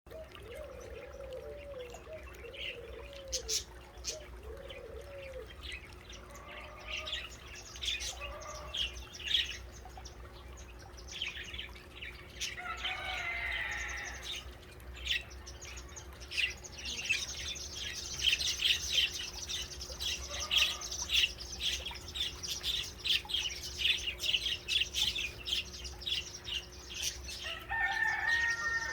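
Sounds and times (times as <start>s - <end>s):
small birds chirping: 0.2s - 28.9s.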